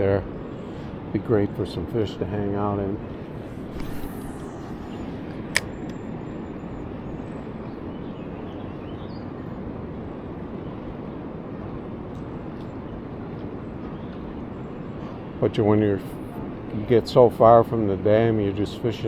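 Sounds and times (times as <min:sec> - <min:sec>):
sharp click: 0:03.7 - 0:06.0.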